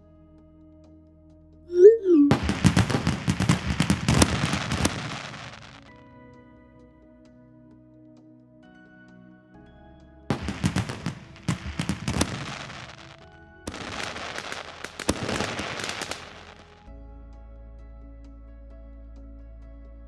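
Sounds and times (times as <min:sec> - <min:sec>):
soft background music: 0:00.0 - 0:20.0
fireworks banging and crackling: 0:02.0 - 0:05.9, 0:10.3 - 0:16.8.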